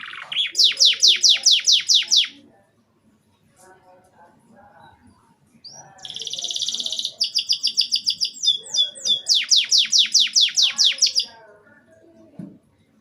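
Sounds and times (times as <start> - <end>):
canary singing: 0.0 - 2.5, 5.6 - 11.5.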